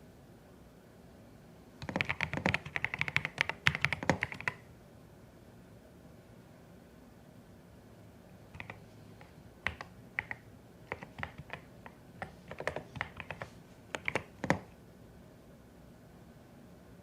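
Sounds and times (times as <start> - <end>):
mechanical keyboard typing: 1.8 - 4.6, 8.5 - 14.7.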